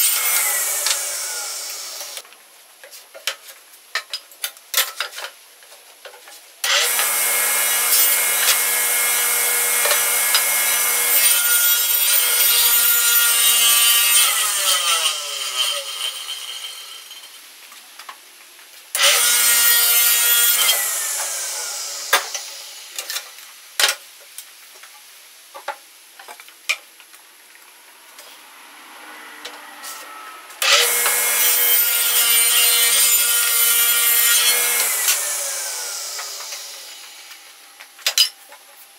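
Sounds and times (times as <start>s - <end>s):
electric saw cutting wood: 0.0s - 2.2s, 6.6s - 17.4s, 19.0s - 23.4s, 28.1s - 37.6s.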